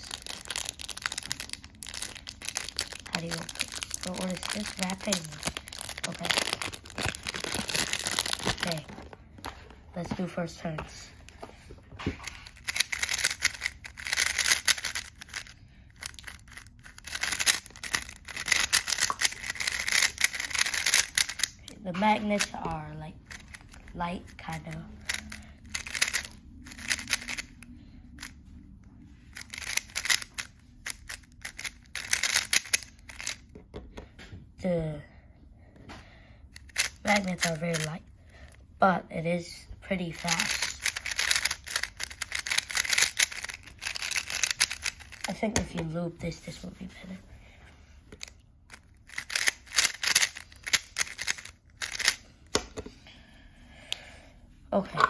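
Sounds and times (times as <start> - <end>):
puzzle cube clicking: 0.0 - 9.2, 12.2 - 27.6, 29.3 - 33.5, 36.6 - 38.0, 40.1 - 45.8, 48.2 - 52.8.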